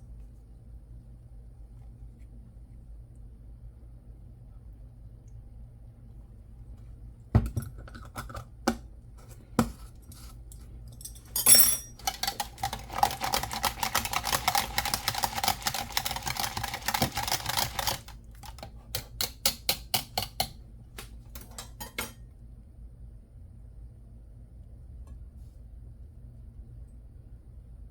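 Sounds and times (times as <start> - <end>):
clink against bowl: 11.0 - 12.0
utensil beating eggs in bowl: 12.0 - 20.6.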